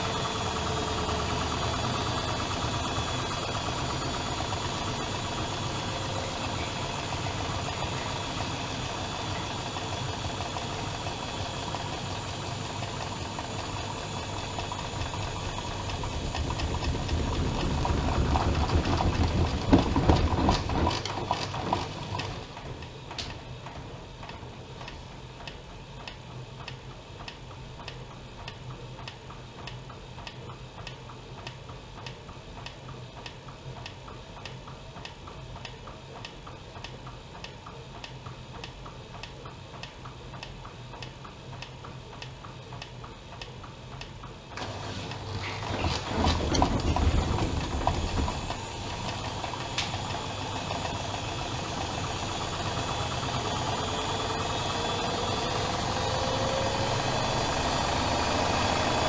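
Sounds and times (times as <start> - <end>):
washing machine motor rattling: 0.0 - 26.0, 44.6 - 59.0.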